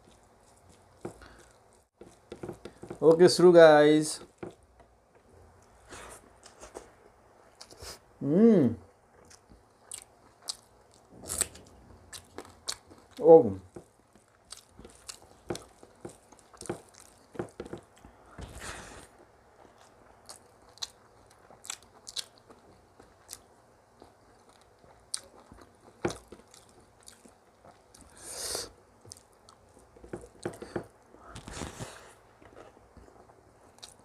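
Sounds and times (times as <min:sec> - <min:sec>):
person chewing food: 0:00.0 - 0:03.1, 0:08.9 - 0:34.0.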